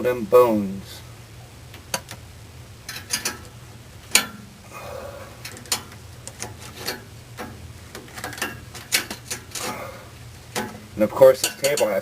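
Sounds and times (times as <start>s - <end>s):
metal tool clicking and scraping: 11.4s - 12.0s.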